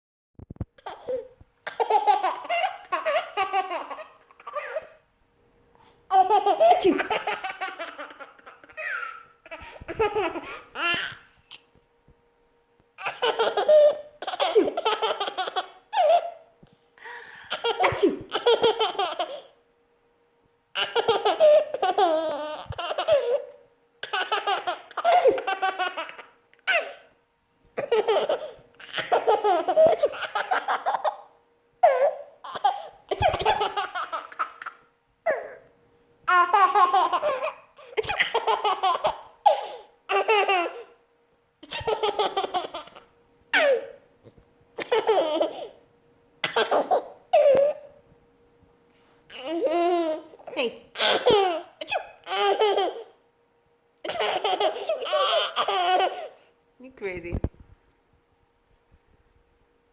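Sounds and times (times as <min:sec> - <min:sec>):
young child laughing: 0:06.1 - 0:11.7, 0:13.0 - 0:16.5, 0:17.5 - 0:19.5, 0:20.8 - 0:27.0, 0:27.8 - 0:35.6, 0:41.6 - 0:44.0.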